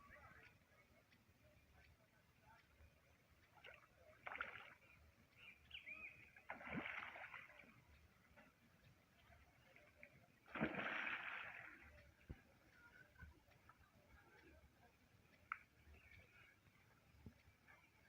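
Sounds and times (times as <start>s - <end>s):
water splashing: 3.4s - 5.0s, 6.2s - 8.6s, 9.2s - 13.8s.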